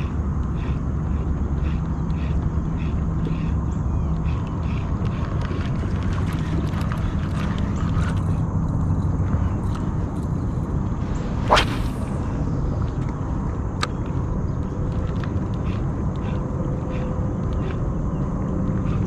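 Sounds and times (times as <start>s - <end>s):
low rumble: 1.9s - 19.0s
fishing rod swish: 11.1s - 12.4s.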